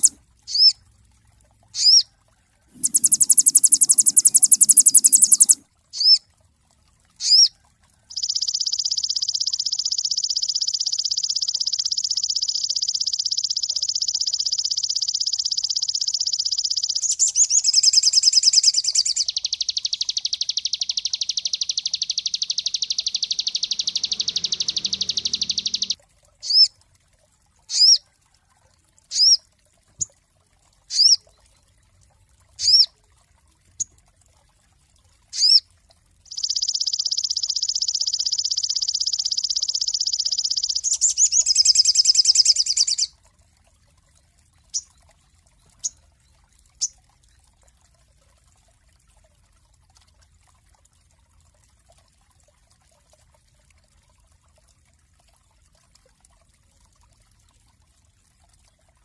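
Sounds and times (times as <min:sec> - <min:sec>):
songbird singing: 0:00.0 - 0:00.8, 0:01.8 - 0:02.0, 0:02.7 - 0:06.2, 0:08.1 - 0:26.7, 0:36.3 - 0:43.1.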